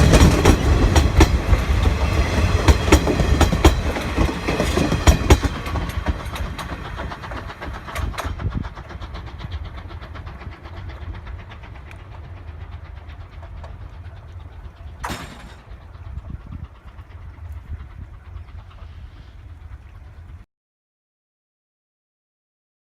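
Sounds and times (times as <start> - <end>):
train wheels clacking over rail joints: 0.0 - 19.8.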